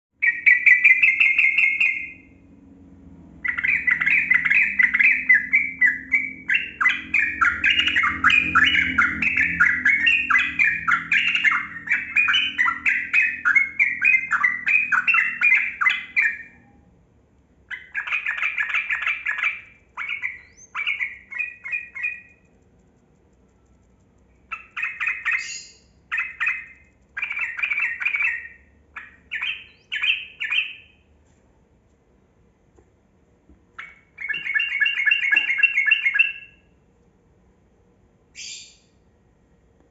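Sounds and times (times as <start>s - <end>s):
bird singing chattering song: 0.2s - 2.4s, 3.4s - 16.8s, 17.7s - 22.6s, 23.9s - 31.1s, 33.8s - 36.8s, 38.3s - 39.0s.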